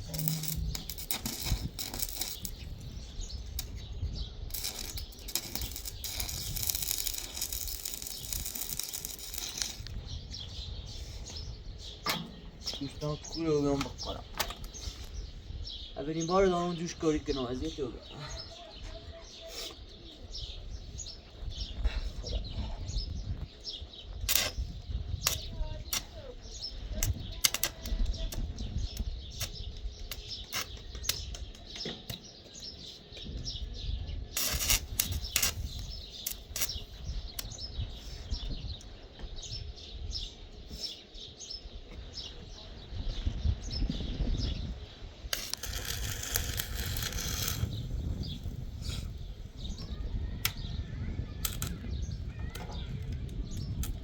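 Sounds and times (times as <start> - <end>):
welding hiss: 0.0 - 3.8, 4.5 - 10.0, 24.3 - 26.2, 34.4 - 38.2, 45.2 - 49.2, 51.4 - 51.8
arc welding crackling and popping: 0.0 - 10.5, 11.8 - 15.2, 23.3 - 39.0, 44.5 - 54.0.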